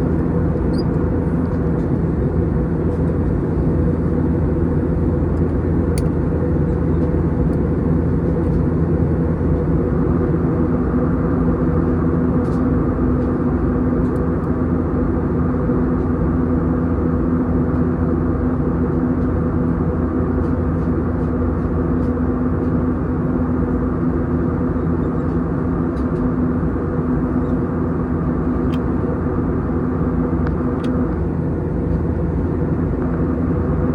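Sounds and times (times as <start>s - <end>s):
steady hum: 0.0s - 12.2s
jet engine cabin drone: 0.0s - 33.9s.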